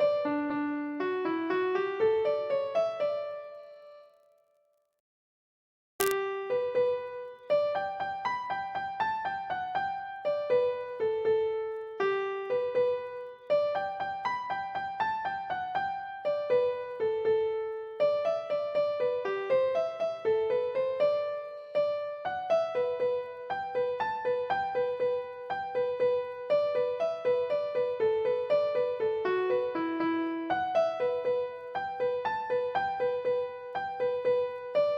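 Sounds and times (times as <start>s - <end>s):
light piano melody: 0.0s - 4.4s, 6.0s - 34.9s
click: 6.0s - 6.2s.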